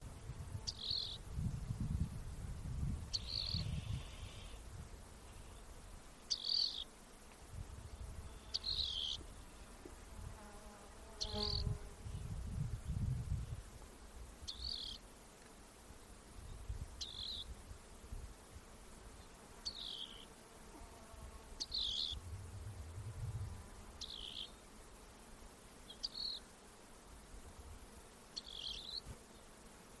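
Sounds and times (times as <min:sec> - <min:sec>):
low wind rumble: 0:00.1 - 0:05.1, 0:11.6 - 0:13.7, 0:22.0 - 0:24.1
bird trilling song: 0:06.3 - 0:06.9, 0:14.5 - 0:15.0, 0:21.6 - 0:22.2, 0:24.0 - 0:24.5
rock wren calling: 0:06.3 - 0:06.9, 0:08.5 - 0:09.2, 0:14.5 - 0:15.0, 0:21.6 - 0:22.2, 0:24.0 - 0:24.6.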